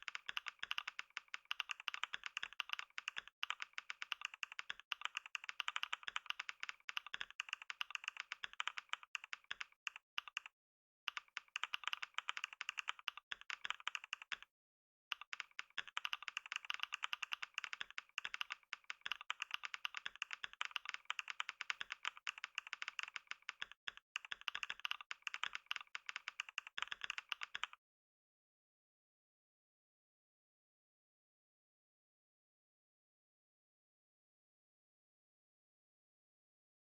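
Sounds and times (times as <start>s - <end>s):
fast keyboard typing: 0.0s - 10.5s, 11.1s - 14.5s, 15.1s - 27.8s.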